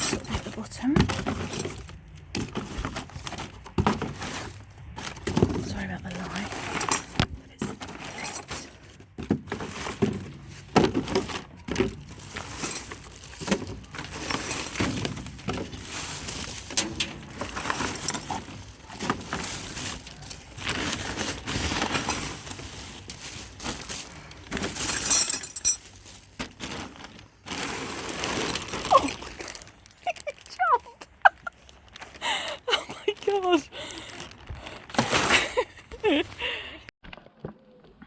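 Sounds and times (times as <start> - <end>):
scrap pieces clattering: 0.0 - 29.8.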